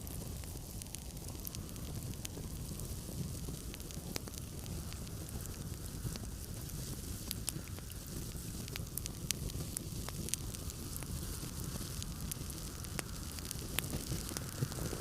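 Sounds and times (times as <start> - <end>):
low rumble of storm wind: 0.0 - 15.0
wood fire crackling: 0.0 - 15.0.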